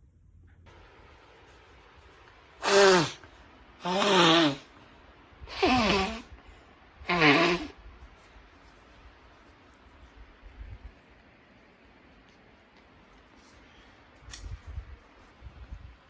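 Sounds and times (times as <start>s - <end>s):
person sneezing: 2.6s - 4.7s, 5.5s - 6.3s, 7.1s - 7.8s.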